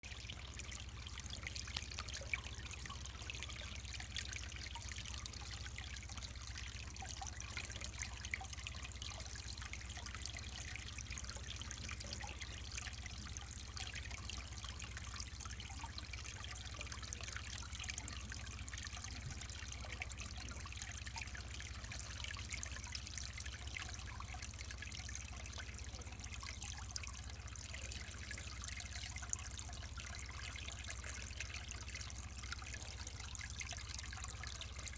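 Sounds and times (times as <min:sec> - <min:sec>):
stream trickling over rocks: 0:00.0 - 0:34.9.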